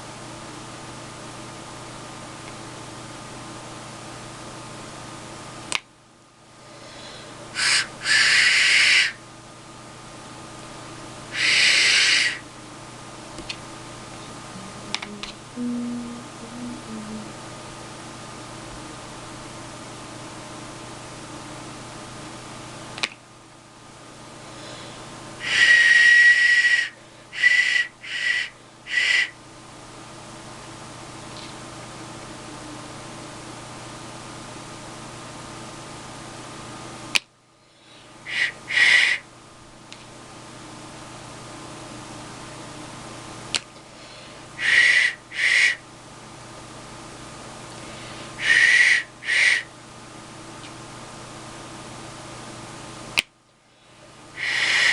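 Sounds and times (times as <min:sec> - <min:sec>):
clay duck whistle: 0:07.6 - 0:09.2, 0:11.4 - 0:12.4, 0:25.4 - 0:29.4, 0:38.3 - 0:39.2, 0:44.6 - 0:45.8, 0:48.4 - 0:49.7
sharp click: 0:14.9 - 0:15.4, 0:23.0 - 0:23.2.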